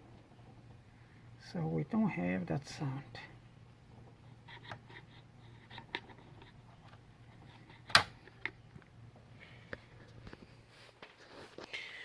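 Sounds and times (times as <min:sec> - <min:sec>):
faint low hum: 0:00.0 - 0:12.0.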